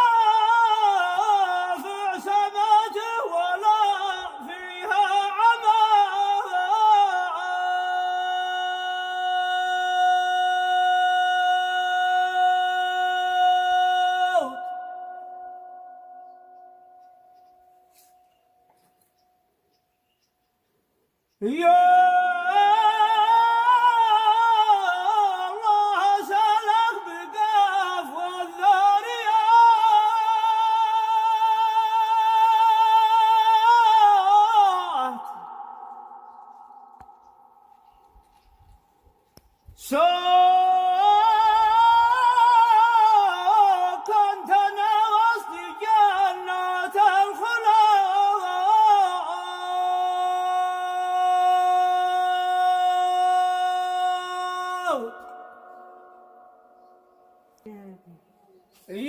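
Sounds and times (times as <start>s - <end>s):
man chanting unaccompanied: 0.0s - 15.0s, 21.4s - 35.8s, 39.9s - 56.0s.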